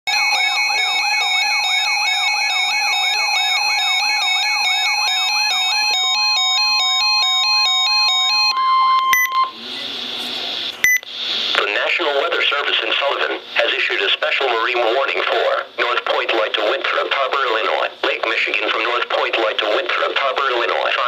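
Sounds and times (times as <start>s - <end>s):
alternating two-pitch beeps: 5.1s - 9.6s, 10.8s - 11.0s.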